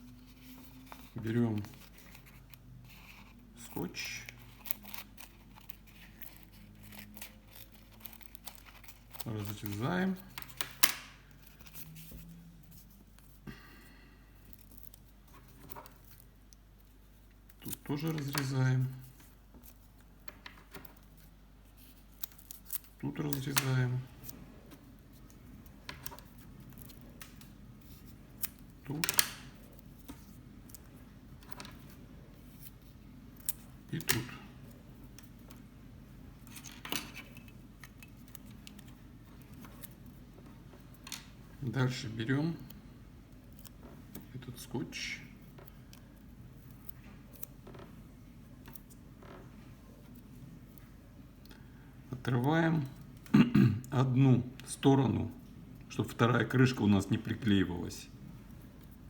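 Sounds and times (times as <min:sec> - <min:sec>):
tape clicks and rustling: 0:00.3 - 0:41.4.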